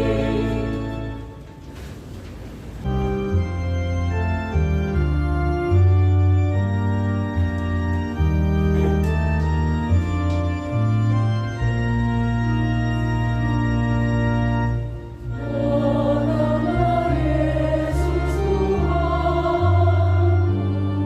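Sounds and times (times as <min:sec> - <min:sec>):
choir singing: 0:00.0 - 0:01.3, 0:15.3 - 0:21.0
organ playing chords: 0:00.0 - 0:01.6, 0:02.8 - 0:21.0.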